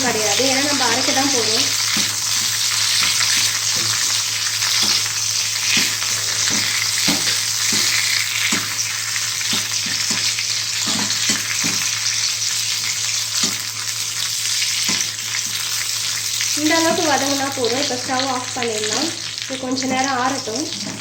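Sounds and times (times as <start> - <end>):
leaves sizzling in oil: 0.0 - 21.0
utensil knocking against pan: 5.7 - 8.7.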